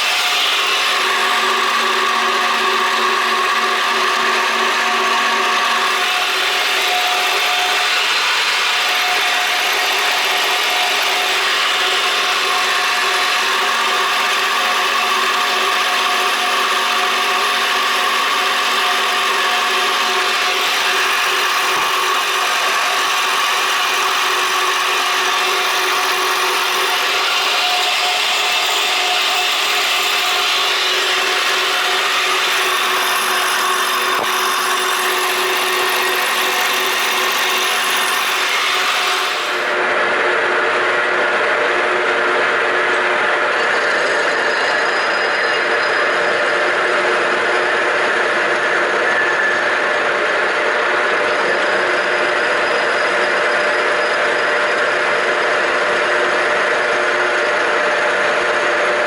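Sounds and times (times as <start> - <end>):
machine tool cutting steel: 0.0 - 39.8.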